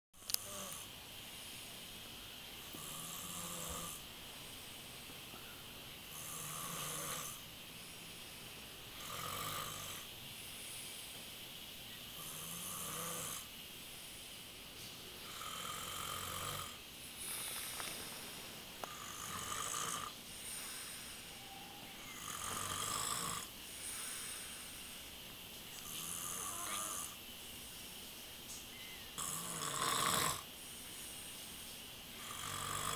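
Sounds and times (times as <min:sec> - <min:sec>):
man snoring loudly: 0:00.2 - 0:00.9, 0:02.7 - 0:04.1, 0:06.1 - 0:07.4, 0:08.9 - 0:10.1, 0:12.1 - 0:13.5, 0:15.2 - 0:17.8, 0:18.8 - 0:21.2, 0:22.0 - 0:24.6, 0:25.8 - 0:27.2, 0:29.2 - 0:30.5, 0:32.1 - 0:32.9.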